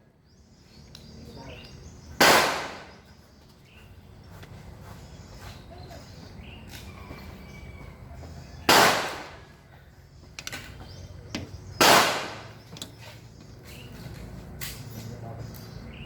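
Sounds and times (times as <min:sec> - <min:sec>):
gunshots: 0:02.2 - 0:03.0, 0:08.7 - 0:09.4, 0:11.8 - 0:12.6.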